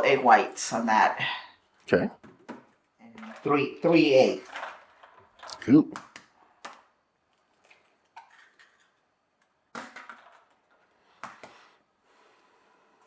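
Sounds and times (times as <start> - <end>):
eggs cracking: 5.5 - 6.2.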